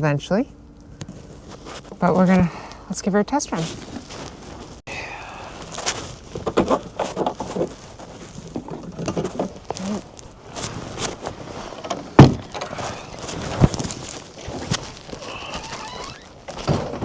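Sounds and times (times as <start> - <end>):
handling knocks and clatter: 5.7 - 17.0
loud thump: 12.2 - 12.6.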